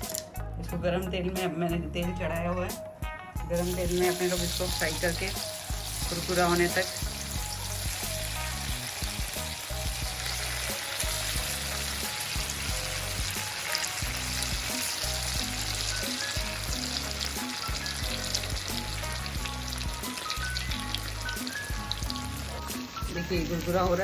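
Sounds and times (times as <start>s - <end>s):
food sizzling in hot oil: 0.0s - 0.3s, 3.5s - 24.0s
background music with bass: 0.0s - 24.0s.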